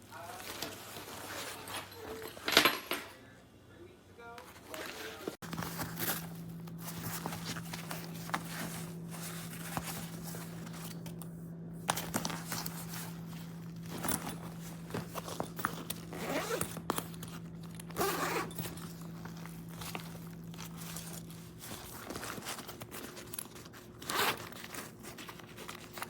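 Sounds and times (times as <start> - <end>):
bag rustling: 0.0 - 2.6, 4.5 - 11.2, 11.8 - 26.0
zippers rasping on backpack: 12.0 - 26.0.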